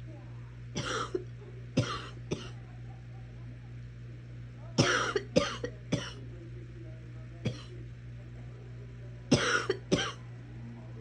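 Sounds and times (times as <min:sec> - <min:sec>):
steady low hum: 0:00.0 - 0:11.0
person coughing: 0:00.8 - 0:01.2, 0:04.8 - 0:06.2, 0:09.3 - 0:10.2.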